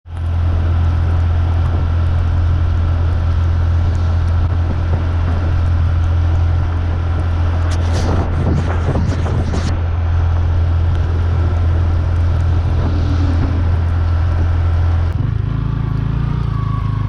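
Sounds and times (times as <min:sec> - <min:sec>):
motorcycle engine running: 0:00.0 - 0:17.0
short rush of higher noise: 0:07.6 - 0:15.2.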